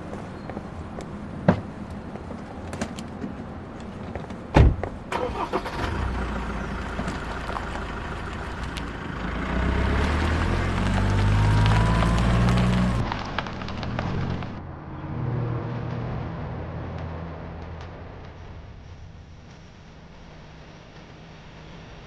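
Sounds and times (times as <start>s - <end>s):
car door shutting: 4.5s - 4.9s
car engine running: 5.2s - 13.0s.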